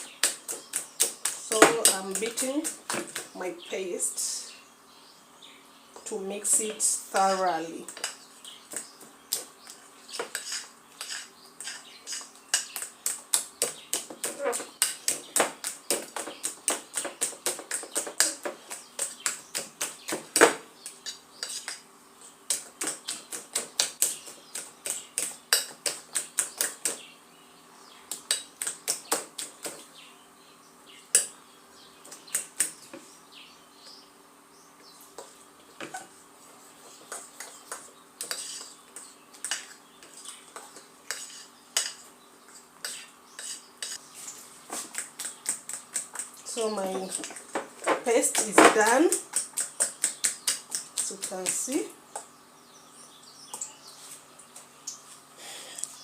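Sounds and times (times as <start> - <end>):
fork beating batter in bowl: 0.0 - 3.3, 6.4 - 27.0, 28.1 - 29.9, 36.8 - 51.9.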